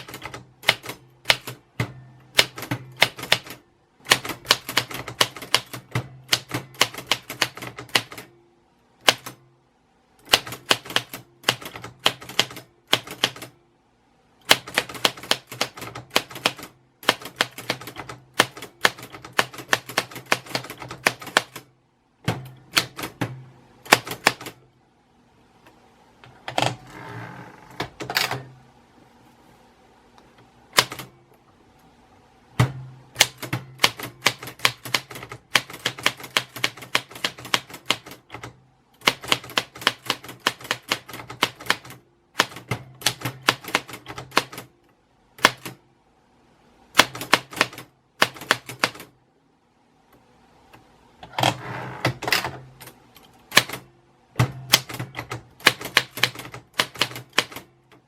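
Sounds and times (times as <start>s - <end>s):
typewriter keys clacking: 54.7s - 58.0s.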